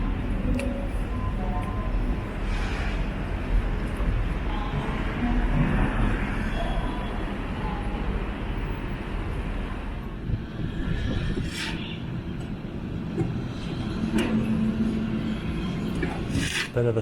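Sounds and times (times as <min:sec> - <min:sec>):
traffic rumble: 0:00.0 - 0:17.0.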